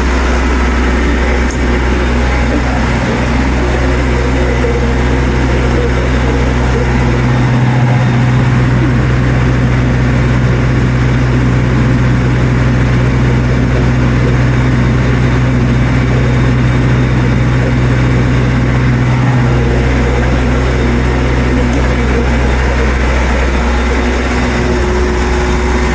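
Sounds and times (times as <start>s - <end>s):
generator engine humming: 0.0s - 25.9s.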